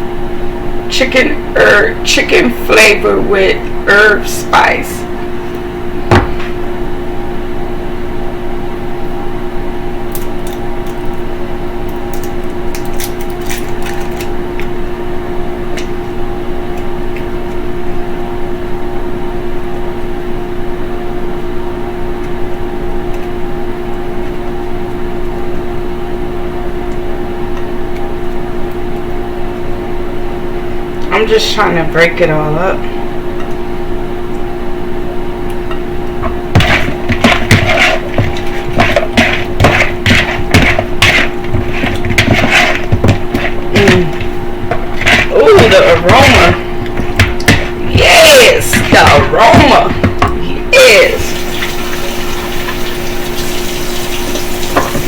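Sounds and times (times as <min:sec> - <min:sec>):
appliance fan humming: 0:00.0 - 0:55.0.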